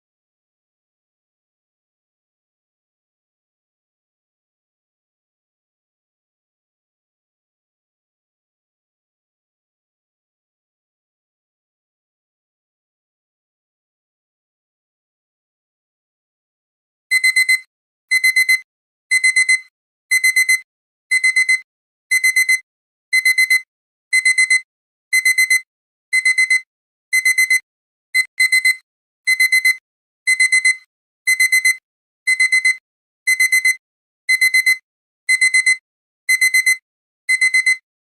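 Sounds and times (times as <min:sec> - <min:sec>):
alarm clock beeping: 0:17.1 - 0:27.6, 0:28.2 - 0:37.8.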